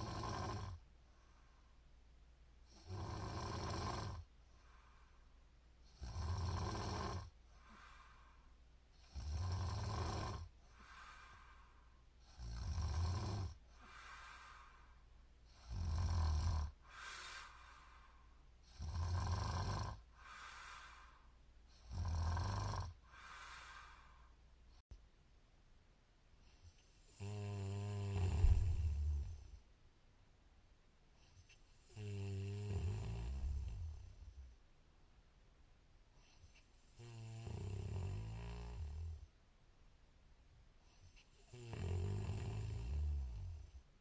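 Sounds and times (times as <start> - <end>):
woman snoring: 0.0 - 0.8, 2.7 - 4.3, 5.9 - 8.3, 9.0 - 11.6, 12.2 - 14.8, 15.5 - 18.0, 18.7 - 21.2, 21.8 - 24.2, 27.0 - 29.5, 31.8 - 34.3, 36.9 - 39.3, 41.0 - 43.7
soft breathing: 0.7 - 2.0, 4.2 - 6.0, 7.3 - 9.2, 10.4 - 12.5, 13.6 - 15.8, 16.7 - 18.9, 20.0 - 21.9, 22.9 - 24.9, 26.3 - 27.2, 27.9 - 29.8, 36.1 - 37.1, 40.8 - 41.7.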